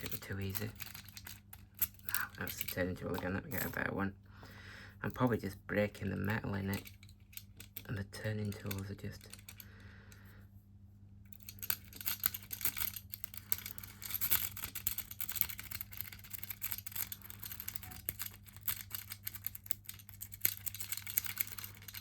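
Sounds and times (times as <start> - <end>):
lock picks scratching and clicking: 0.0 - 3.8, 6.5 - 9.7, 11.3 - 22.0.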